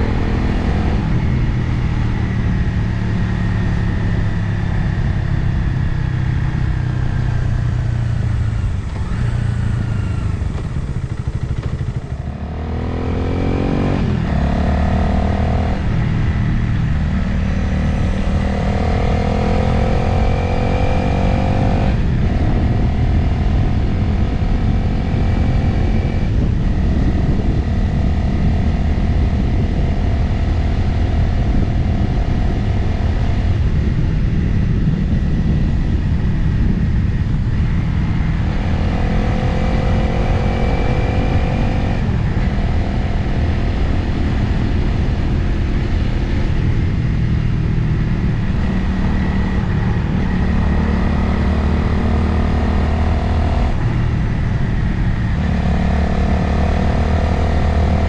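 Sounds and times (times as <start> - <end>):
motorcycle engine shifting up gears: 0.0 - 58.0
wind rushing over microphone: 0.0 - 58.0.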